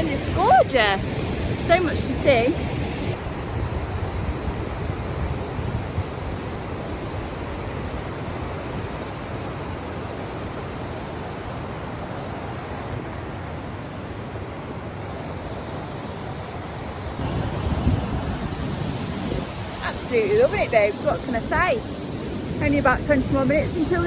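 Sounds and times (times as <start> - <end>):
wind buffeting microphone: 0.0 - 8.1, 17.2 - 24.0.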